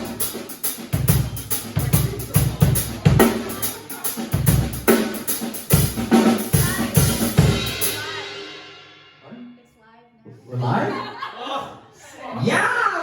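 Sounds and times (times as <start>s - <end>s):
cymbals ringing: 0.0s - 9.2s.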